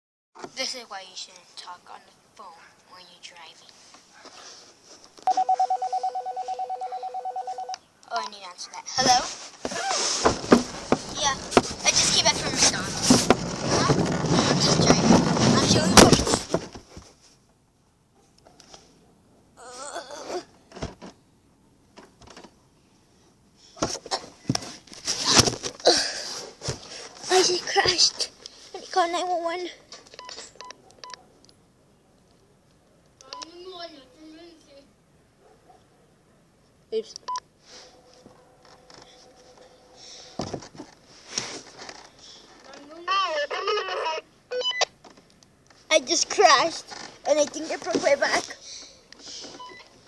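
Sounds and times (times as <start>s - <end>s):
faint steady phone tone: 5.2s - 7.9s, 43.0s - 44.9s
phone beep: 5.3s - 7.8s, 43.5s - 44.9s, 49.6s - 49.9s
knocks and clattering: 10.2s - 16.9s.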